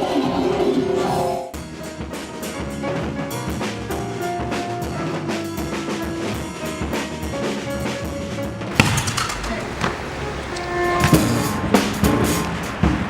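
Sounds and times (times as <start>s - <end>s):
drums beating quick rhythm: 8.7s - 13.0s
held melody notes: 8.7s - 13.0s.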